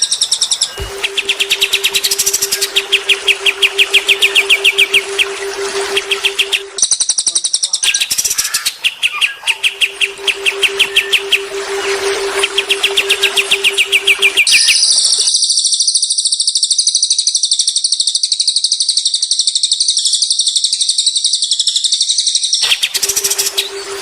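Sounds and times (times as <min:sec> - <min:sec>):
songbird chirps: 0:00.0 - 0:16.5
fast high buzzing trill: 0:00.5 - 0:06.9, 0:09.4 - 0:15.3, 0:22.6 - 0:24.0
steady low hum: 0:00.8 - 0:06.8, 0:09.5 - 0:15.3.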